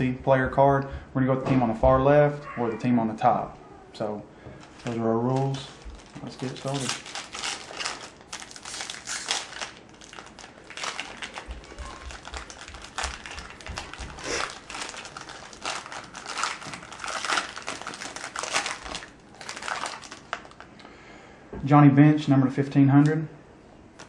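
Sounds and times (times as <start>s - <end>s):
plastic wrapper crinkling: 4.6s - 20.9s.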